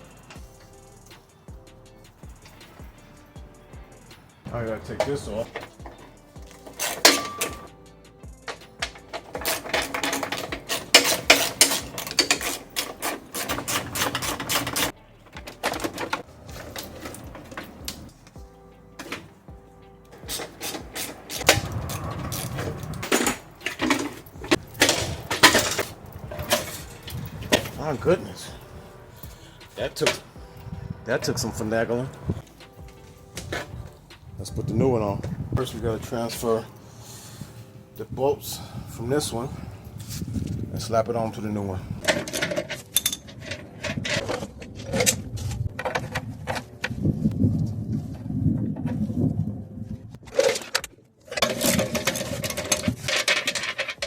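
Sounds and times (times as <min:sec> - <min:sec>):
hand tools clicking and clattering: 0:00.0 - 0:34.3, 0:35.1 - 0:47.1, 0:50.2 - 0:54.0
knocks scrapes and rattles: 0:04.5 - 0:07.7, 0:08.4 - 0:18.4, 0:20.1 - 0:34.3, 0:41.5 - 0:47.0, 0:50.1 - 0:54.0.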